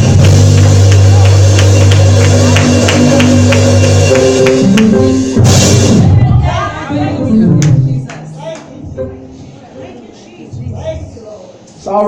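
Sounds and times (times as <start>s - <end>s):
low bass chords: 0.0s - 8.3s
percussion beat: 0.0s - 9.2s
cymbal crash: 5.2s - 6.4s.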